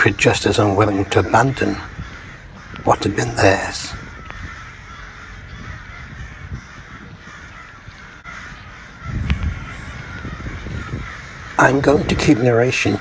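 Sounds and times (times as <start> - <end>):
crows cawing: 0.5 - 13.0.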